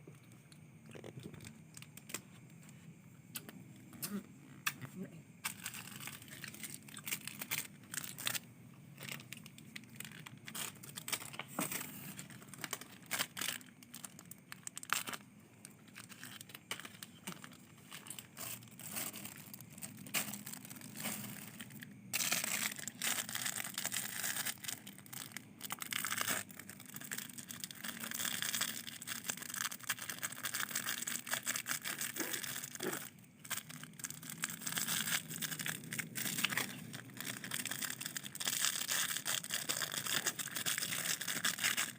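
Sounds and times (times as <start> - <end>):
material rustling and crinkling: 15.9 - 27.3.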